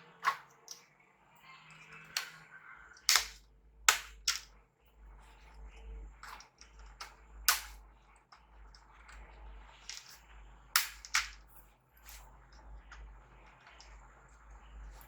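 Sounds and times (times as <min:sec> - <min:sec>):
plastic clips snapping: 0:02.0 - 0:04.5, 0:06.2 - 0:07.8, 0:09.8 - 0:10.2, 0:10.8 - 0:12.2.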